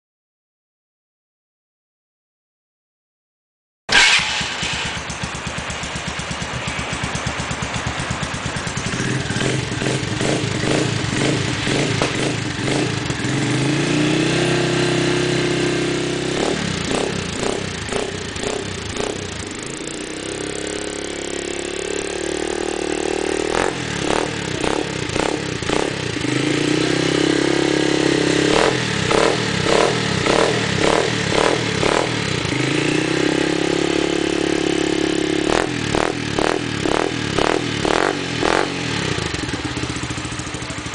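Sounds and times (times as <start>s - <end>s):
motorcycle engine idling and revving: 3.9s - 40.9s.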